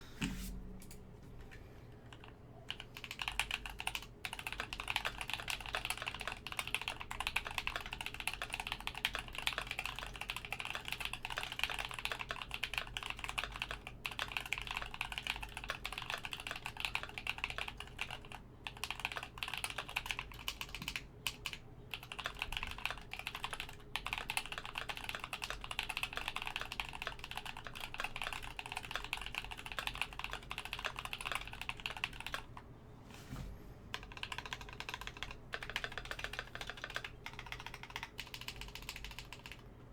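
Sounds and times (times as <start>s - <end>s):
mechanical keyboard typing: 2.1s - 32.5s, 33.9s - 39.6s.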